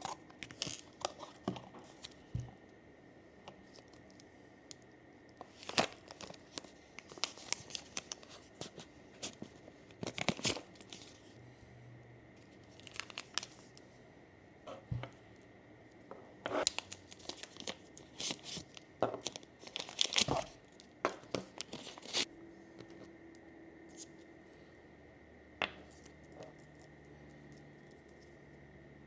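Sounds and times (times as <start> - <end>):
packaging crinkling and tearing: 0.0 - 2.2, 5.4 - 11.2, 12.7 - 13.7, 16.6 - 22.3.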